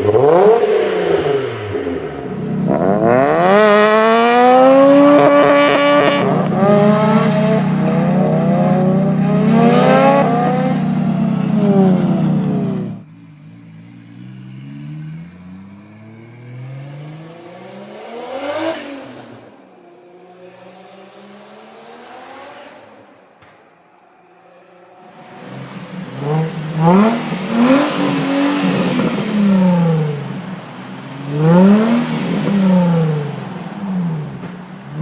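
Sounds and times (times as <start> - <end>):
car with loud exhaust accelerating: 0.0 - 23.1, 25.0 - 35.0
car passing by: 13.8 - 23.2.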